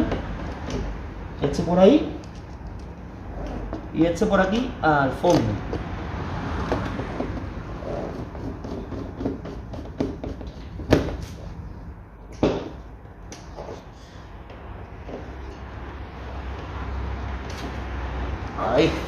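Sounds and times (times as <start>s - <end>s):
sharp knocks: 6.6s - 11.2s.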